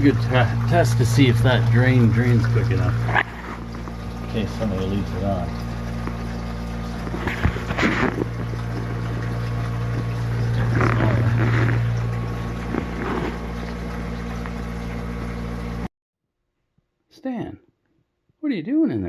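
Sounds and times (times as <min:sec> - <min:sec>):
electric water pump humming: 0:00.0 - 0:15.9
water running: 0:00.0 - 0:15.9.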